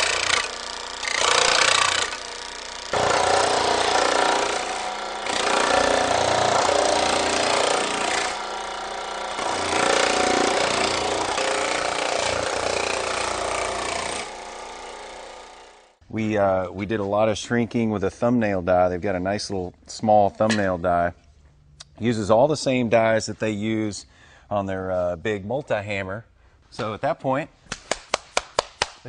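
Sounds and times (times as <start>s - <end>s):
power hammer hammering sheet metal: 3.0s - 8.5s.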